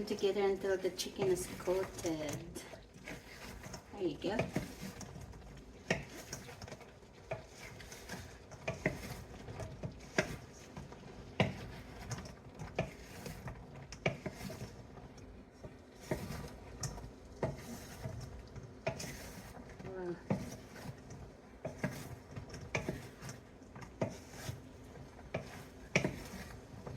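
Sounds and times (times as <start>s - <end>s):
stirring chicken in thick sauce: 0.0s - 26.9s.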